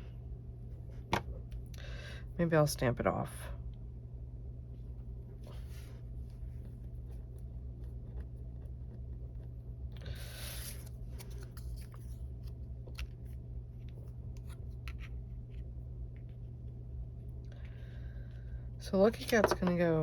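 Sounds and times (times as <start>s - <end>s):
steady low hum: 0.0s - 20.0s
paper rustling: 10.3s - 12.2s.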